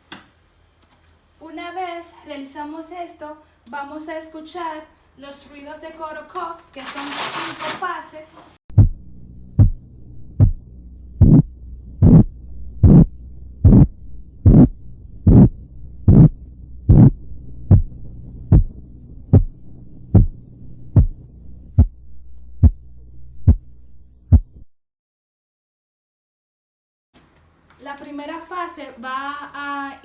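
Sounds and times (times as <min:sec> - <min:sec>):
pulse thumps: 0:08.7 - 0:24.7
steady low hum: 0:08.7 - 0:24.7.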